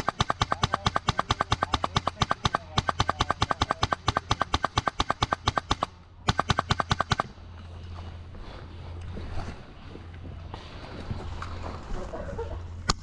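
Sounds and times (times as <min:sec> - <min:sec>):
airsoft rifle firing full auto: 0:00.0 - 0:07.3.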